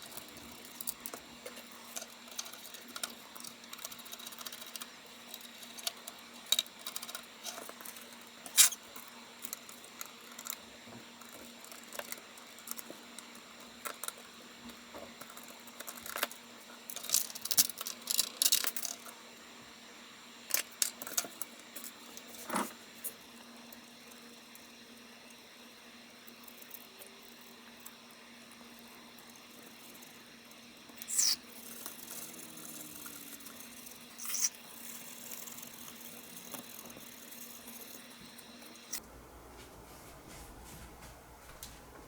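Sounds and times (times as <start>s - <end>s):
small computer parts clicking: 0.0s - 10.6s, 15.2s - 19.1s, 31.0s - 38.0s
faint steady hum: 0.0s - 42.0s.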